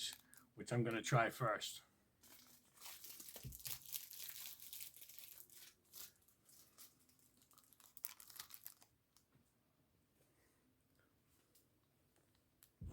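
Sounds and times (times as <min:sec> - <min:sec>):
plastic wrapper crinkling and tearing: 0:00.0 - 0:00.5, 0:02.2 - 0:09.3.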